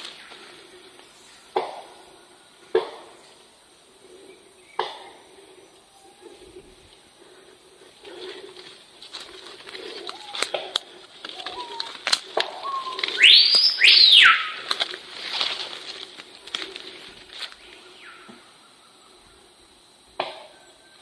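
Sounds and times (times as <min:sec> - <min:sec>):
soft animal calls: 0:09.3 - 0:15.0
loud whistled animal calls: 0:11.4 - 0:14.7.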